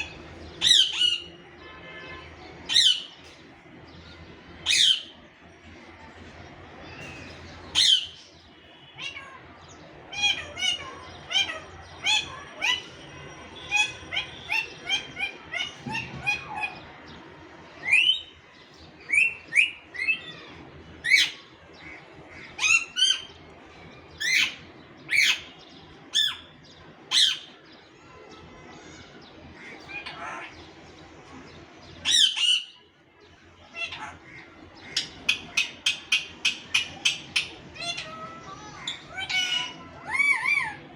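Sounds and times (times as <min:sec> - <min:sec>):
parrot squawking and chirping: 0:00.0 - 0:01.4, 0:02.6 - 0:03.3, 0:04.6 - 0:05.2, 0:07.0 - 0:09.4, 0:10.1 - 0:16.9, 0:19.1 - 0:23.4, 0:24.2 - 0:27.6, 0:29.6 - 0:30.8, 0:32.0 - 0:33.0, 0:33.6 - 0:40.9.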